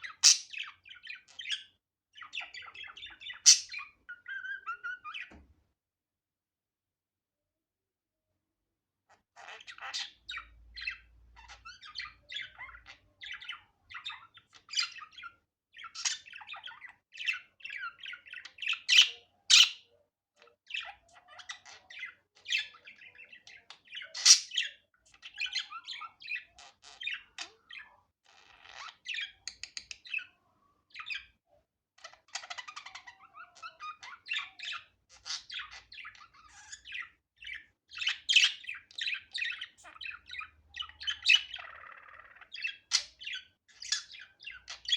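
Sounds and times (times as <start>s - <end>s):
budgerigar chattering: 0.0s - 1.6s, 2.3s - 5.2s, 17.4s - 19.9s
budgerigar squawks: 0.1s - 0.6s.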